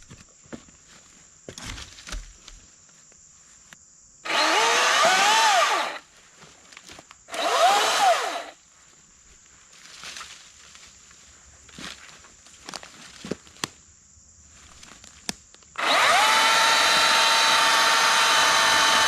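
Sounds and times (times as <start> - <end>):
battery chainsaw motor whining: 4.2 - 6.0, 7.3 - 8.6, 15.8 - 19.0.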